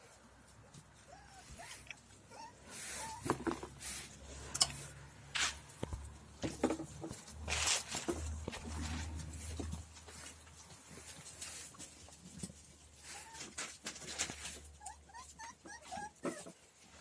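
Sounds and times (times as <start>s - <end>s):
dog snuffling: 0.8s - 5.7s.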